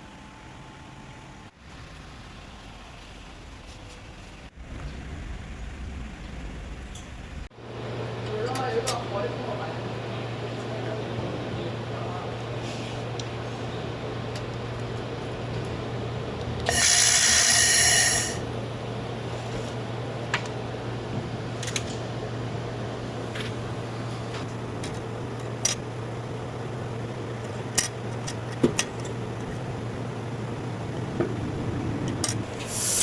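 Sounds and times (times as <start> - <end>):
welding machine humming: 16.5 - 18.6, 29.2 - 33.0
loud hiss: 16.7 - 18.5, 32.5 - 33.0.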